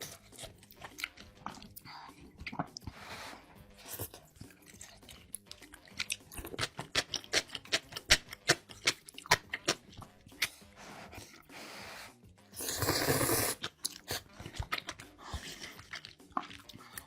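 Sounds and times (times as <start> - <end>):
chewing crunchy food: 0.0 - 3.0, 3.6 - 11.5, 12.5 - 17.0.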